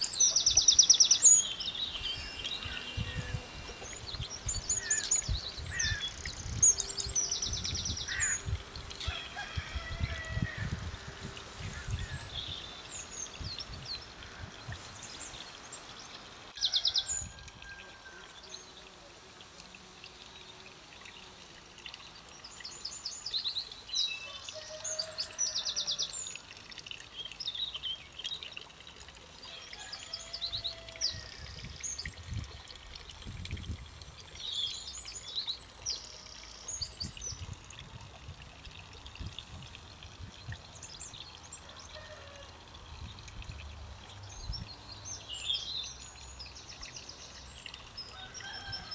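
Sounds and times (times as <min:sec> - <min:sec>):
songbirds singing and chirping: 0:00.0 - 0:19.0, 0:42.6 - 0:48.9.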